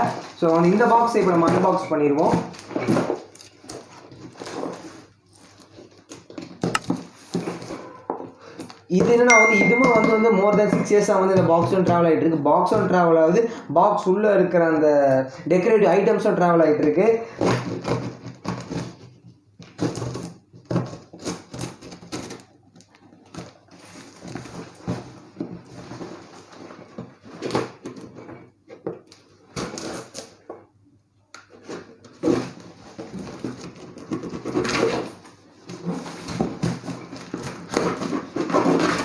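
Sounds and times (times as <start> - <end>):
packing material rustling: 19.8 - 28.4.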